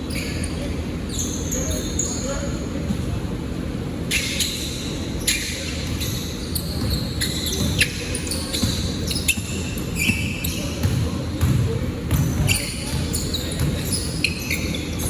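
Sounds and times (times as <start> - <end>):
sneaker squeaks on court: 0.0 - 3.0, 4.0 - 15.0
low hubbub of voices: 0.0 - 15.0
basketball bouncing: 8.6 - 13.9.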